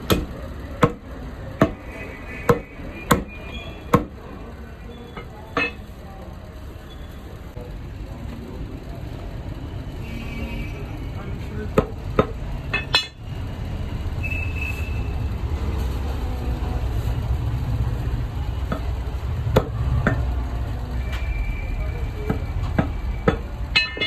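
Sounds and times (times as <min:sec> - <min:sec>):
cleaver chopping on a block: 0:00.0 - 0:01.8, 0:02.5 - 0:03.3, 0:03.9 - 0:04.2
street traffic rumble: 0:00.0 - 0:24.0.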